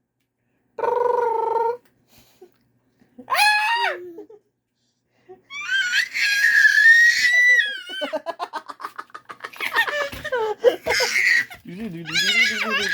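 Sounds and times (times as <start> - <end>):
baby squealing: 5.5 - 8.0, 10.9 - 12.9.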